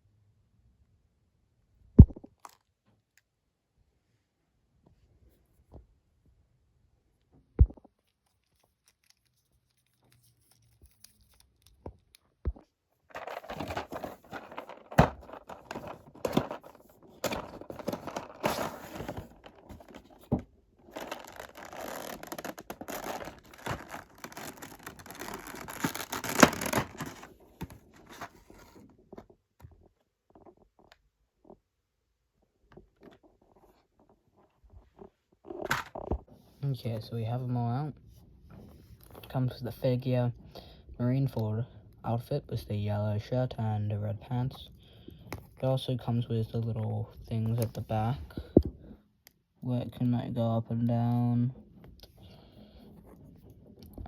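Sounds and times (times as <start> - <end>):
plastic packaging crinkling and tearing: 13.1 - 28.8
plastic parts clicking: 13.1 - 28.8.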